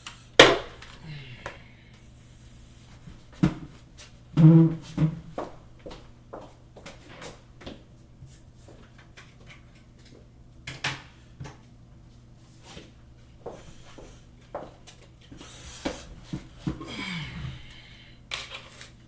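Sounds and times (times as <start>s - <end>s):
steady low hum: 0.0s - 9.0s.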